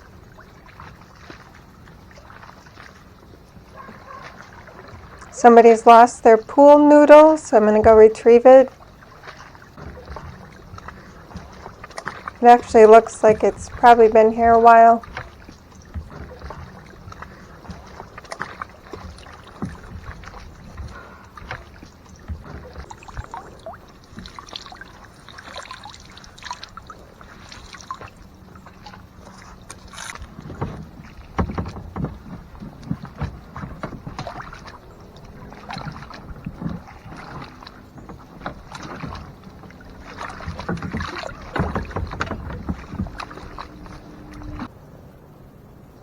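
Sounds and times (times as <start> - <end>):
paddle splashing water: 0.0 - 45.5
knocks against kayak hull: 9.2 - 12.4, 13.4 - 24.7, 28.9 - 44.7.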